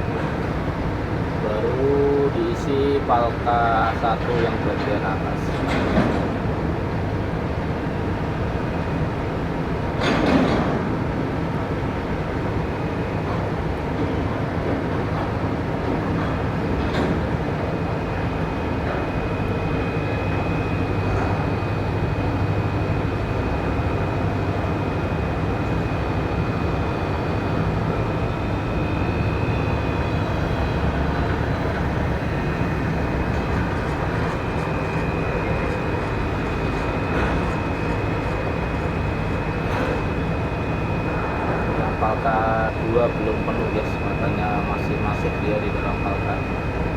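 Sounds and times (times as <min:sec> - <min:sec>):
heavy machinery rumble: 0:25.4 - 0:41.9
high-pitched whine: 0:40.6 - 0:46.9.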